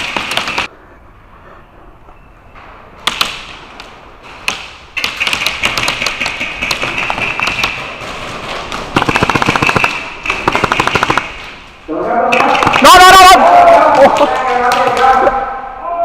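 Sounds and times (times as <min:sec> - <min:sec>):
airsoft guns firing: 0:00.0 - 0:00.7, 0:04.4 - 0:11.6, 0:12.3 - 0:13.2.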